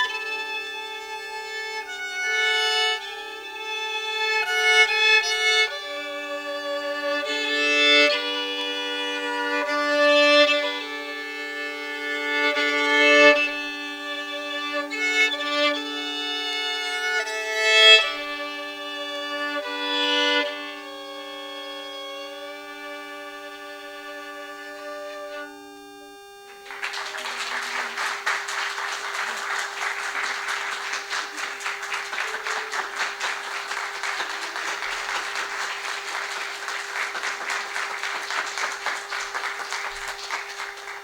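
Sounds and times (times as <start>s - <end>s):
violin playing slow melody: 0.0s - 26.7s.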